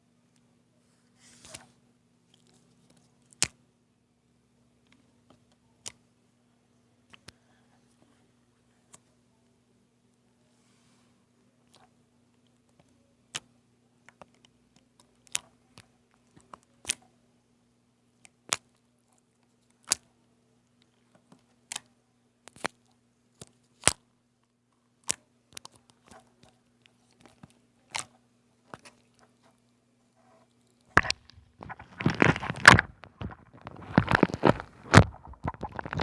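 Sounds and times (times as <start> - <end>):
slime being stretched: 30.7 - 36.0
air bubbles popping in slime: 31.7 - 36.0.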